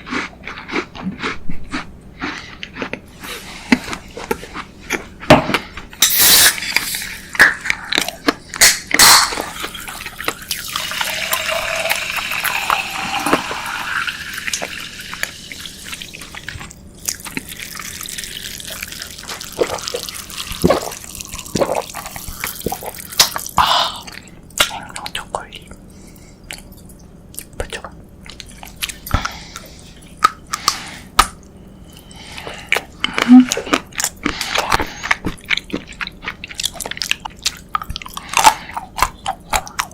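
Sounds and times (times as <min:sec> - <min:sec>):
wet chewing: 0:00.0 - 0:05.7, 0:26.4 - 0:39.9.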